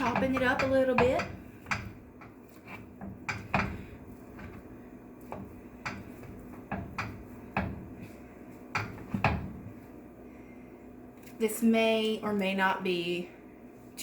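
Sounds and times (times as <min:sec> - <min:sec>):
utensil knocking on skillet: 0:00.0 - 0:08.1, 0:08.7 - 0:09.7.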